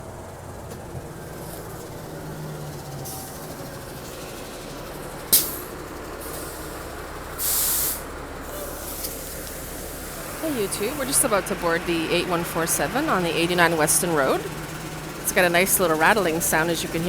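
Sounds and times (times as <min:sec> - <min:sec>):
bus engine humming: 0:00.0 - 0:17.0
air brake hiss: 0:07.4 - 0:10.4.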